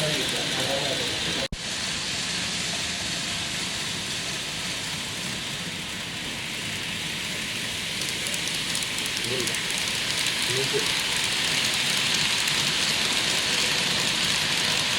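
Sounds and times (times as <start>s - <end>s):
model train rolling on track: 0.0s - 14.9s.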